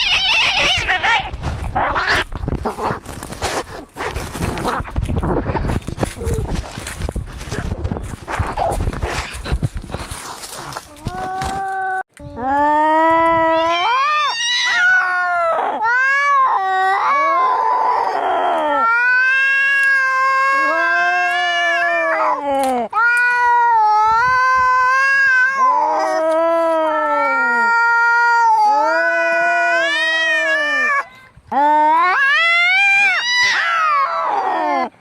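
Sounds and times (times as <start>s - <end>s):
cats caterwauling: 0.0s - 2.3s, 13.2s - 35.0s.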